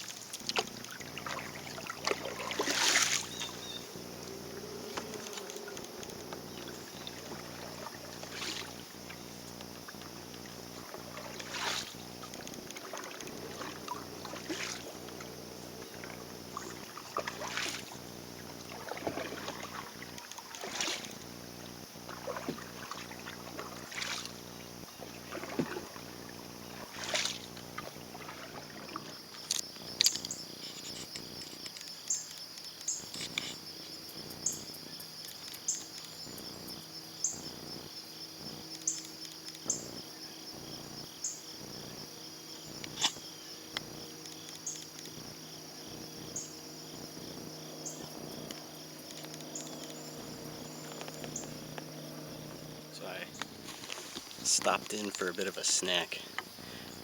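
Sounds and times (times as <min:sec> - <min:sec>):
paddle swishing through water: 0:00.0 - 0:29.6, 0:47.9 - 0:57.0
insect chirps: 0:00.0 - 0:57.0
insects buzzing: 0:00.0 - 0:57.0.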